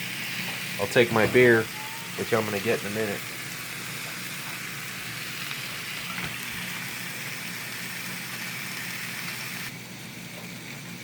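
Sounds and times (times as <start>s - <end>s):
meat sizzling on a grill: 0.0s - 11.0s.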